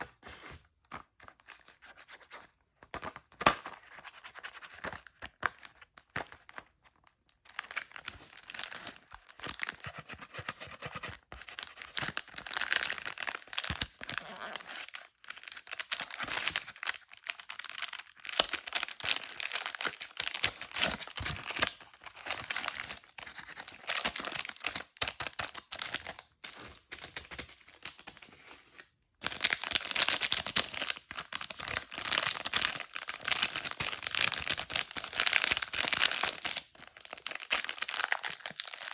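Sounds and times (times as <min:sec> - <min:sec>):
plastic wrappers crinkling and tearing: 0:11.7 - 0:28.1, 0:29.2 - 0:38.9.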